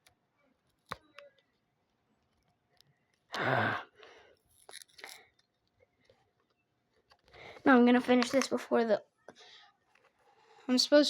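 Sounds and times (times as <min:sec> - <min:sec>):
person sighing: 0:03.3 - 0:04.2
faint ticks and scrapes: 0:04.4 - 0:08.6, 0:09.3 - 0:10.7.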